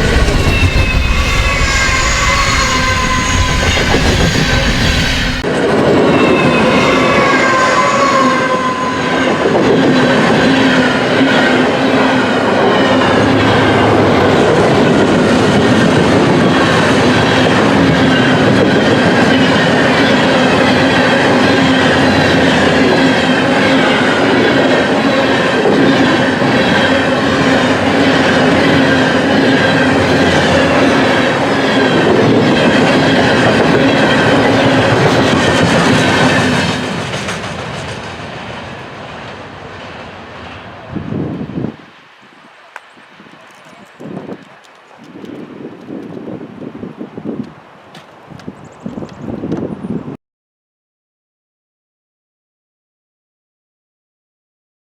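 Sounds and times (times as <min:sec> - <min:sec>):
wheel squeal: 0:00.0 - 0:05.4
freight train wheels rolling: 0:00.0 - 0:46.4
wheels clicking over rail joints: 0:42.7 - 0:46.2.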